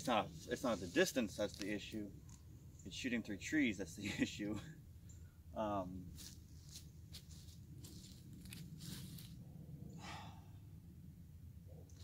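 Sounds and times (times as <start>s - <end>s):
soft rustles: 6.1s - 9.4s
low rumble: 7.4s - 12.0s
man sighing: 10.0s - 10.6s.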